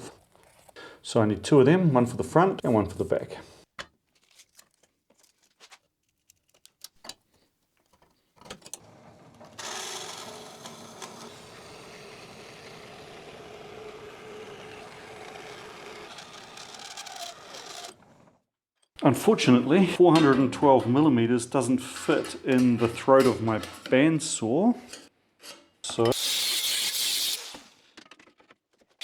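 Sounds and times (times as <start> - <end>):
workshop machine humming: 9.6 - 18.0.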